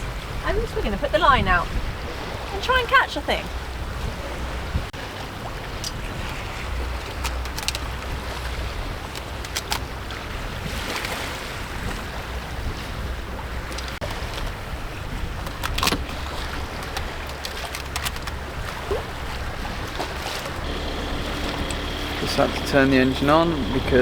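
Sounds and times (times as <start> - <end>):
water rushing along hull: 0.0 - 24.0
wind on microphone: 0.0 - 24.0
sharp clicks and knocks: 7.0 - 7.9, 9.1 - 9.9
low steady rumble: 18.7 - 24.0.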